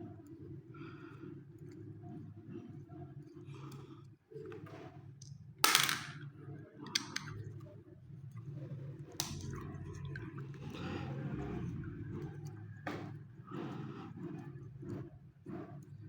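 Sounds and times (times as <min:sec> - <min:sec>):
steady low hum: 0:06.2 - 0:16.0.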